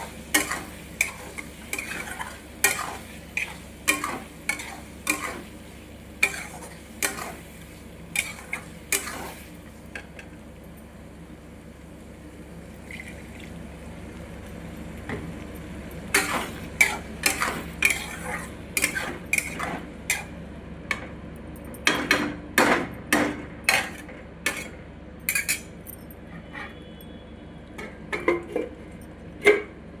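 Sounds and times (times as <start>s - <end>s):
metal spoon scraping a pan: 0.3s - 5.5s, 6.2s - 7.4s, 8.2s - 9.4s, 16.1s - 20.3s, 23.7s - 24.7s.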